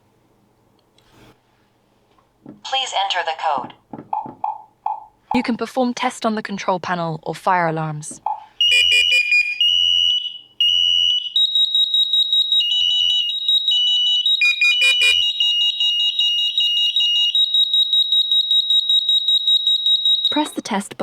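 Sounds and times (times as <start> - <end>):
lower beeps: 8.6 - 9.6
beeps: 8.6 - 10.4, 14.3 - 15.6
smoke alarm pulsing tone: 8.6 - 20.7.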